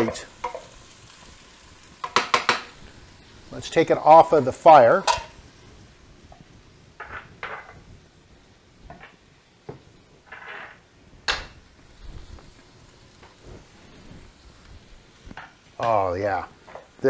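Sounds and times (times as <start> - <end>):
skillet and utensils knocking: 2.0 - 2.7.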